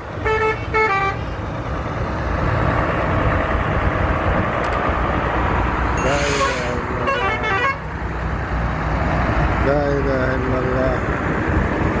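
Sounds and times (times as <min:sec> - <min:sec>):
vehicle engine rumble: 0:00.0 - 0:12.0
multi-tone bus horn: 0:00.2 - 0:01.4, 0:06.0 - 0:07.9.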